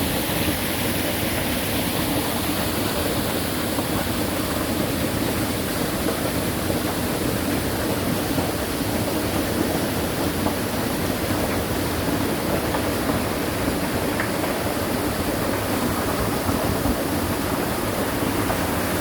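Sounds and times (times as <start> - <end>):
stream water rushing: 13.3 - 19.0.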